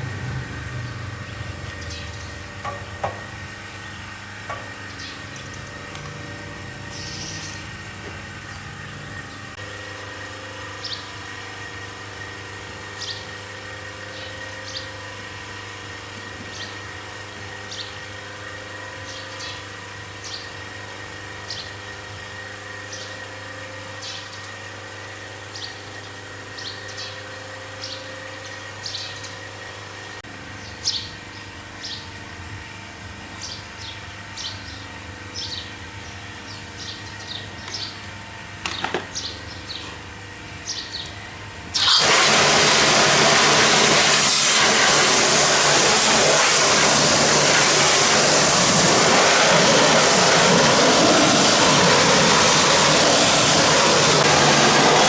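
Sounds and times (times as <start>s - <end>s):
steady machine hum: 0.0s - 16.1s, 39.2s - 55.0s.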